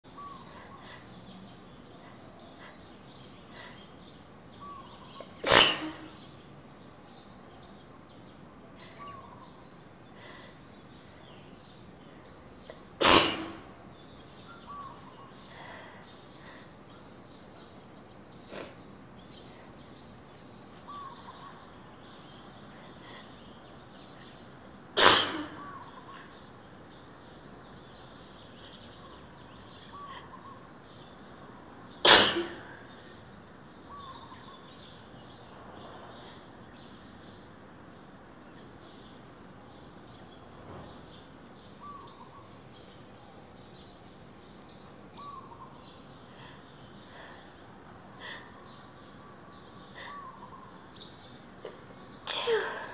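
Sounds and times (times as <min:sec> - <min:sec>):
person sneezing with echo: 0:05.4 - 0:06.1, 0:13.0 - 0:13.7, 0:25.0 - 0:25.7, 0:32.1 - 0:32.8.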